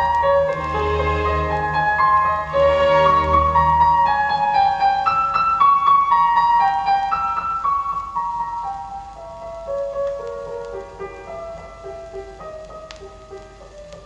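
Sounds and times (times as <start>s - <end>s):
piano music over loudspeakers: 0.0s - 14.0s.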